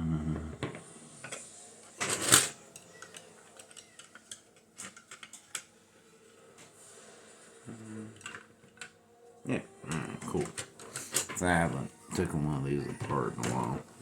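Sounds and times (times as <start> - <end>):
plastic toy parts clicking and clattering: 2.0 - 5.7, 8.2 - 9.0, 10.2 - 11.6.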